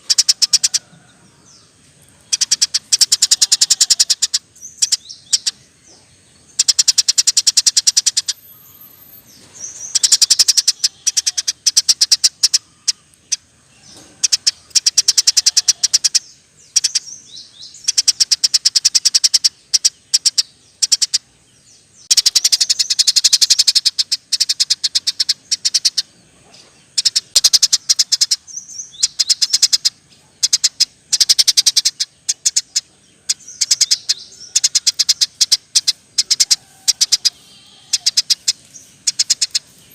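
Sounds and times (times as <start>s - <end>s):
sparrow chirping: 0.0s - 39.9s.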